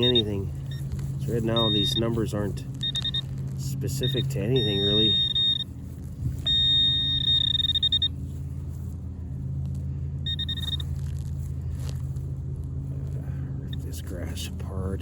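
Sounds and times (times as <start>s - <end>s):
metal detector beeping: 0.0s - 8.3s, 10.2s - 11.3s.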